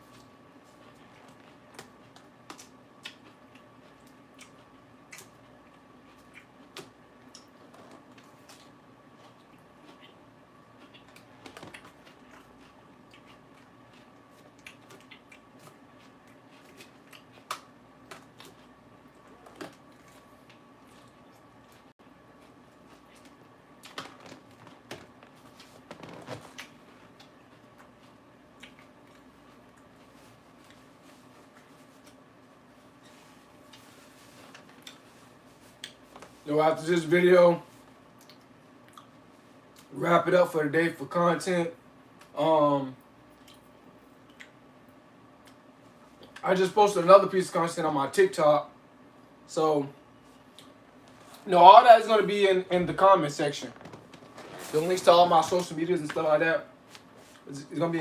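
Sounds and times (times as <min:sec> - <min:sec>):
lettuce crunching when chewed: 0:00.0 - 0:32.2, 0:33.6 - 0:36.4
faint steady hum: 0:00.0 - 0:58.0.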